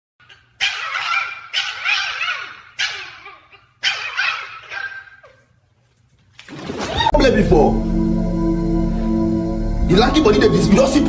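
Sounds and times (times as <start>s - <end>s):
dog barking: 0.2s - 5.4s.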